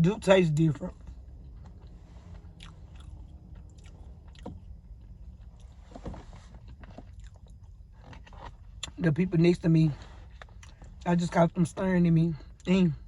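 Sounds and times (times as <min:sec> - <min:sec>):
person chewing food: 0:01.4 - 0:05.8, 0:06.6 - 0:08.9.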